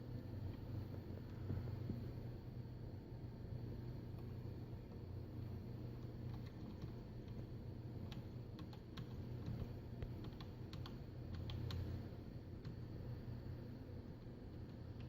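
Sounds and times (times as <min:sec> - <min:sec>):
steady low hum: 0:00.0 - 0:15.0
keys clicking on keyboard: 0:06.2 - 0:07.4, 0:08.0 - 0:11.9.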